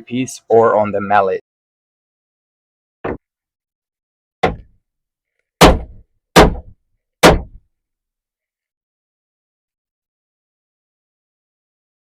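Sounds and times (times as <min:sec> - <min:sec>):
wooden mallet knocking on board: 0:04.4 - 0:04.7.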